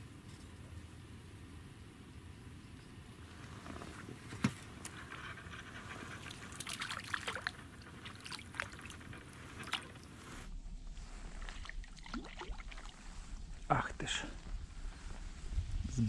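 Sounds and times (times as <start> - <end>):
water dripping and trickling: 6.3 - 10.1, 11.4 - 13.0.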